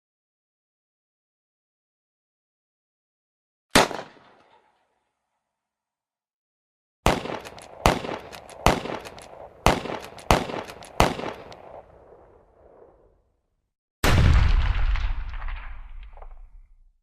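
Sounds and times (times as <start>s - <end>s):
sharp bangs with ringing echo: 3.8s - 4.4s, 7.0s - 11.8s.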